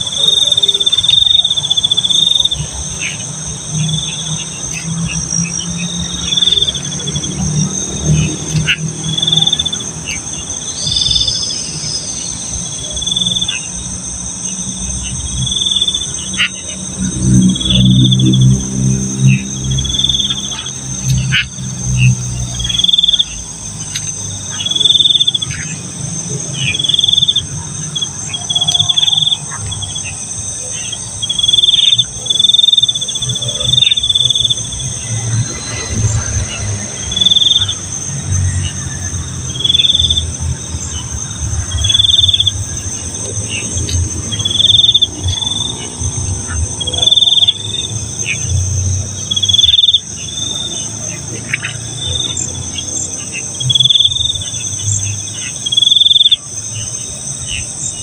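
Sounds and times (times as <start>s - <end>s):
crickets shrilling: 0.0s - 58.0s
insect chirping: 0.0s - 58.0s.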